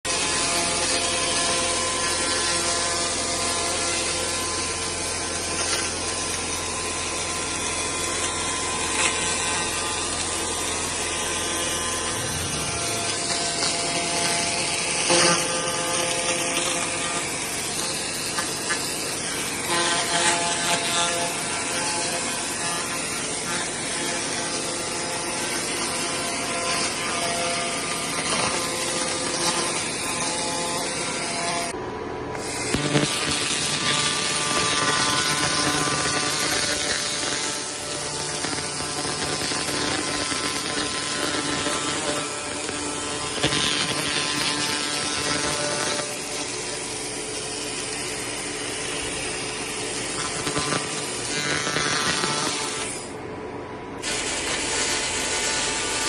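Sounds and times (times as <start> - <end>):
whining tones: 0.1 - 53.2
low hum: 9.5 - 16.2
laser cleaner crackling hiss: 11.8 - 21.0, 32.6 - 46.5, 50.0 - 53.0.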